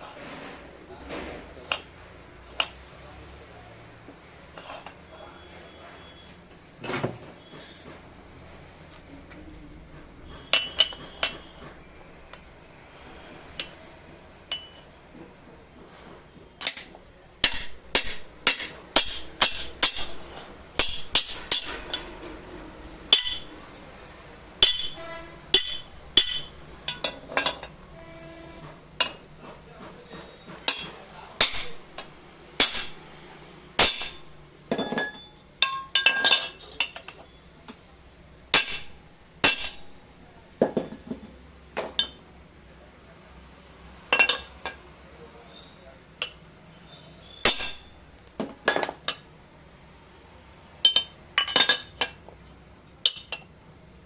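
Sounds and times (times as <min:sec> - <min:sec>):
metal clinking on metal: 0:10.4 - 0:11.5, 0:14.4 - 0:15.0, 0:16.6 - 0:22.1, 0:23.1 - 0:23.6, 0:24.6 - 0:27.8, 0:29.0 - 0:29.3, 0:30.7 - 0:33.0, 0:33.8 - 0:37.3, 0:41.8 - 0:42.2, 0:44.1 - 0:44.8, 0:47.4 - 0:49.4, 0:50.8 - 0:52.2, 0:53.0 - 0:53.5.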